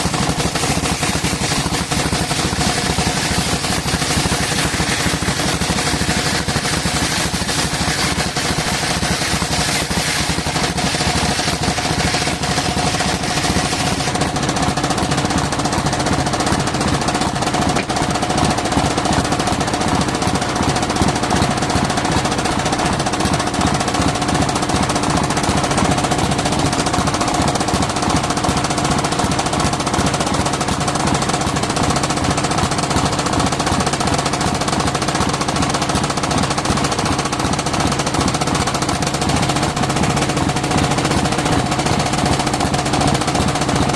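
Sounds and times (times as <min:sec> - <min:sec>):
circular saw running: 0:00.0 - 0:43.9.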